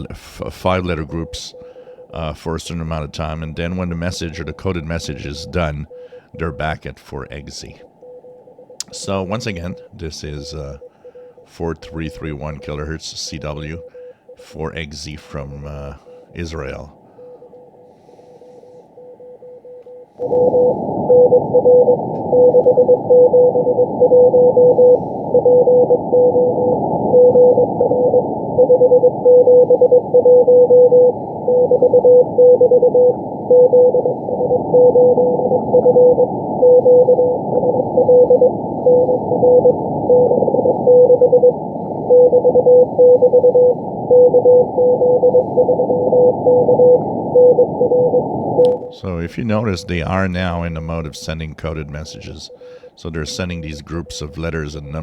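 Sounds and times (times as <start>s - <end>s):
radio band hiss: 0.0s - 7.9s, 8.8s - 17.0s, 33.1s - 55.0s
morse code beeps: 0.8s - 2.2s, 3.6s - 6.8s, 8.0s - 17.4s, 18.2s - 48.8s, 51.8s - 55.0s.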